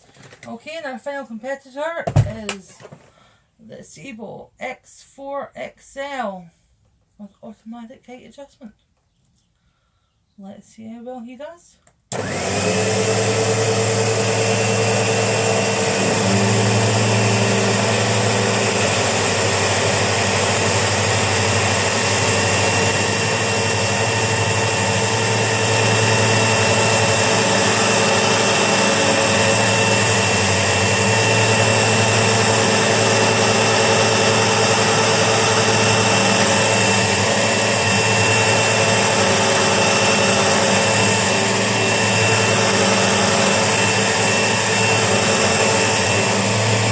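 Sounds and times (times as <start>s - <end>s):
upright vacuum cleaner running: 12.1s - 46.9s.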